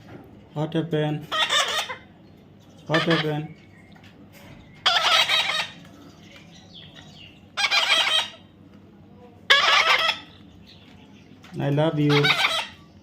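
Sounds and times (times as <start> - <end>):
parrot squawking: 1.2 - 2.2, 2.8 - 3.6, 4.8 - 5.9, 7.4 - 8.6, 9.5 - 10.4, 11.9 - 13.0.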